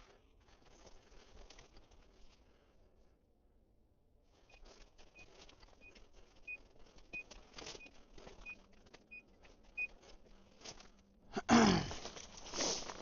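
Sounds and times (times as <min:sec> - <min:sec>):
rustling in cover: 0:00.0 - 0:02.8, 0:11.9 - 0:13.0.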